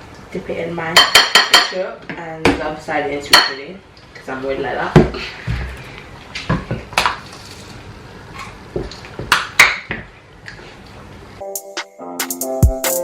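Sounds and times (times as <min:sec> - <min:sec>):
background music with held notes: 0:11.4 - 0:13.0.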